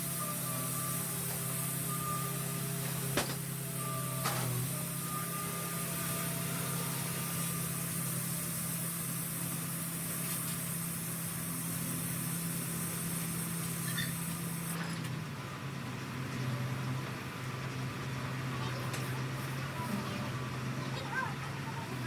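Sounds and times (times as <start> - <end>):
high hiss: 0.0 - 14.8
engine running steadily: 0.0 - 22.0.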